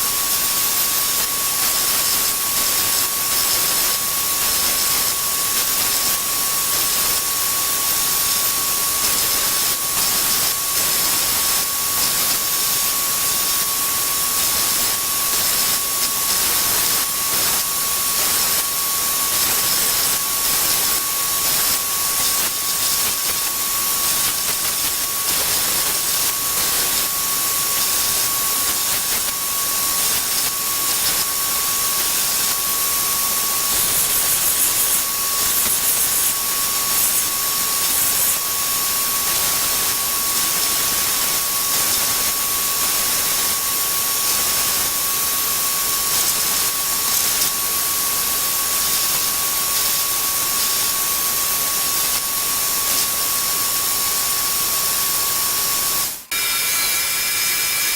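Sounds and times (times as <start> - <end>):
power sander on wood: 54.6 - 57.9.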